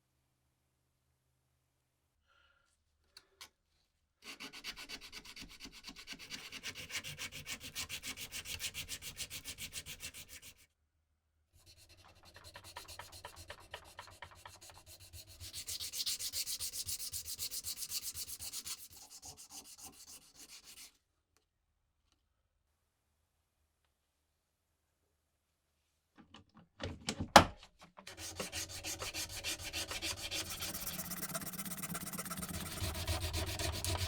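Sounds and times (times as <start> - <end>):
hand sanding strokes: 4.2 - 10.6, 11.6 - 21.0, 28.1 - 34.0.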